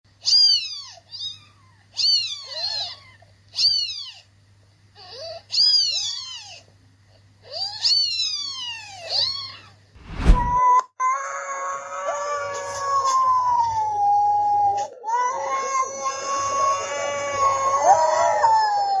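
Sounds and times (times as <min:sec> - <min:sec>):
loud burst of noise with thump: 0:10.0 - 0:10.6.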